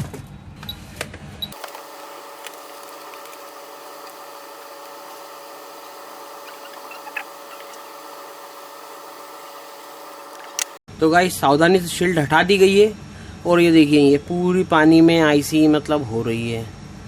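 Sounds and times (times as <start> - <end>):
hot air blower hissing: 1.5 - 10.8.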